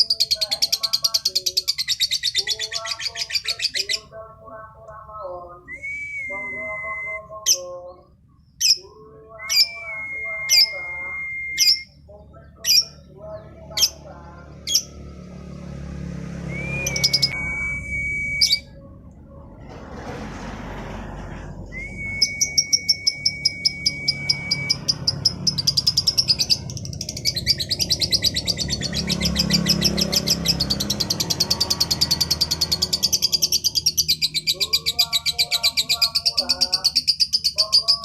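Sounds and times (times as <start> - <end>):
lovebird whistling and chattering: 0.0 - 4.1, 8.6 - 12.0, 12.6 - 13.1, 13.7 - 15.0, 16.4 - 18.9, 21.7 - 38.0.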